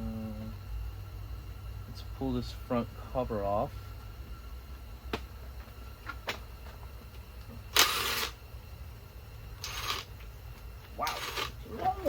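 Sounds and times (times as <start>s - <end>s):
power tool bursts: 7.7s - 8.4s, 9.6s - 10.1s.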